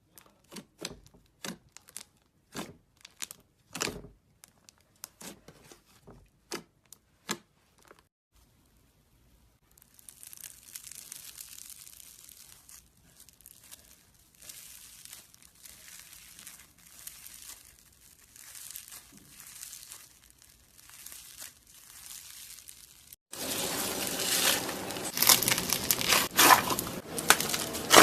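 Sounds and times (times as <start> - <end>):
slime crackling squish: 9.6 - 23.2, 24.2 - 28.0.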